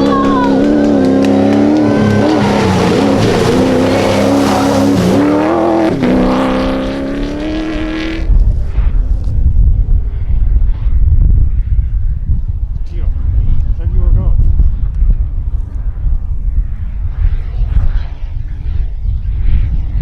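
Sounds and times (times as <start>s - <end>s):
rally car engine at high revs: 0.0s - 9.3s
low gusty rumble: 0.0s - 20.0s.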